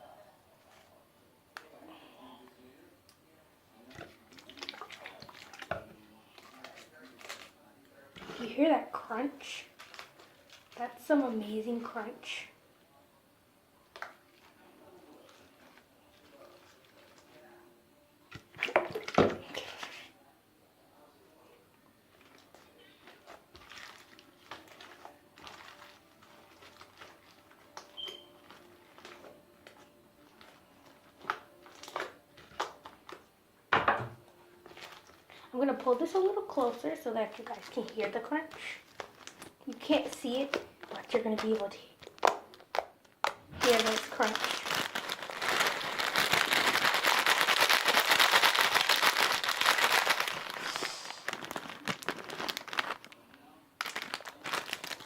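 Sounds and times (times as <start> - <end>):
slime crackling crunches: 23.1 - 29.8, 35.8 - 53.2, 53.8 - 55.0.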